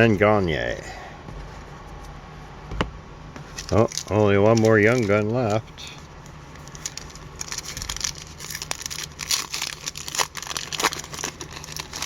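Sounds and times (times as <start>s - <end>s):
wrapper crinkling and tearing: 3.5s - 12.0s.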